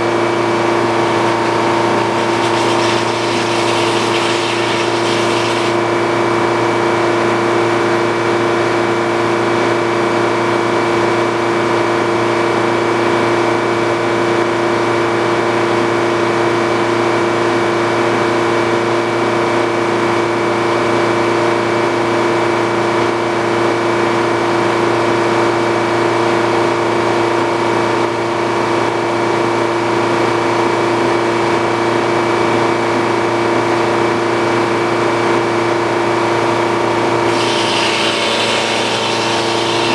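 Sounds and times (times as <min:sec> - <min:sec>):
sawmill engine humming: 0:00.0 - 0:06.3, 0:37.2 - 0:39.9.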